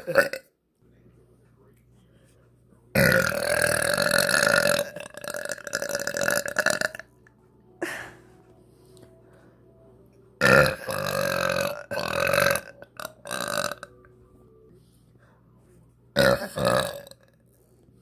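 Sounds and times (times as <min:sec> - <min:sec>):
girl burping loudly: 0:00.0 - 0:00.4, 0:03.0 - 0:07.1, 0:10.4 - 0:13.9, 0:16.2 - 0:17.2.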